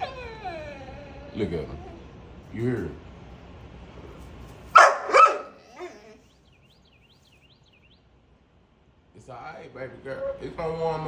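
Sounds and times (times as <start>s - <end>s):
dog barking loudly: 4.7s - 6.0s.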